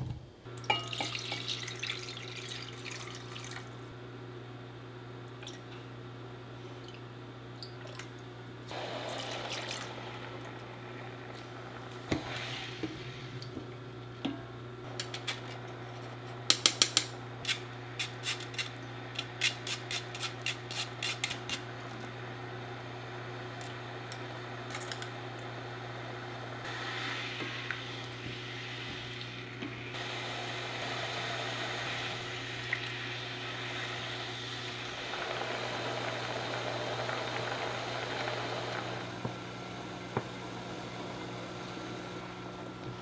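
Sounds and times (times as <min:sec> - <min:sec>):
food sizzling in a pan: 0:08.7 - 0:13.4, 0:16.7 - 0:42.4.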